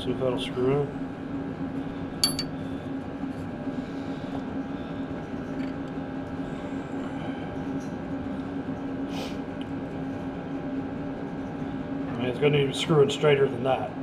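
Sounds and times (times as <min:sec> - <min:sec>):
low mechanical hum: 0:00.0 - 0:14.0
metallic clink: 0:02.2 - 0:02.6.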